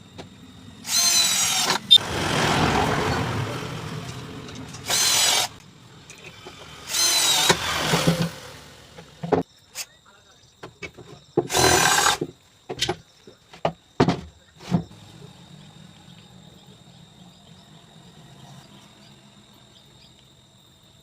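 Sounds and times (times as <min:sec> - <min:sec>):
power tool cutting wood: 0:00.8 - 0:05.6, 0:06.3 - 0:09.2, 0:11.5 - 0:12.3.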